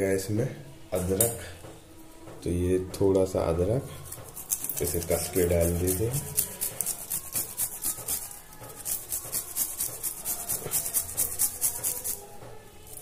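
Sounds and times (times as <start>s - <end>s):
ginger rasping on hand grater: 4.1s - 12.3s.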